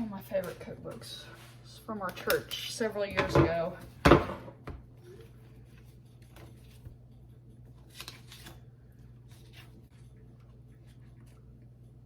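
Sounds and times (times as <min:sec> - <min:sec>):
low steady hum: 0:00.0 - 0:12.0
book pages rustling: 0:05.2 - 0:11.6.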